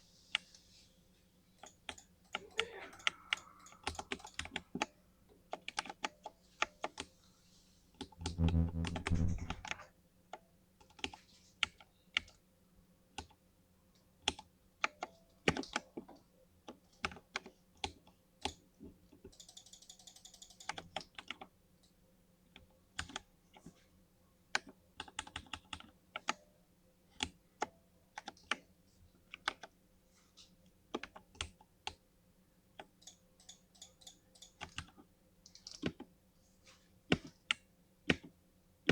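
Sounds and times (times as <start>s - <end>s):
low burst: 8.2s - 9.7s.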